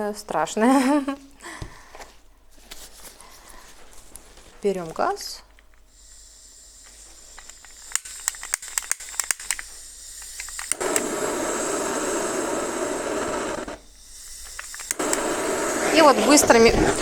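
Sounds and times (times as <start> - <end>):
gas torch flame hissing: 3.1 - 17.0
gas torch igniter clicks: 4.6 - 17.0.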